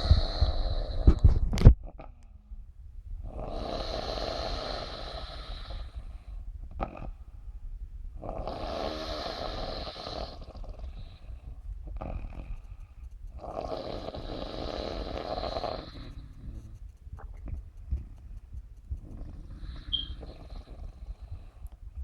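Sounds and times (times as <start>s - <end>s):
person snoring: 3.3s - 6.0s, 8.2s - 12.6s, 13.4s - 16.8s, 19.0s - 21.7s
high nasal whistle: 19.9s - 20.2s.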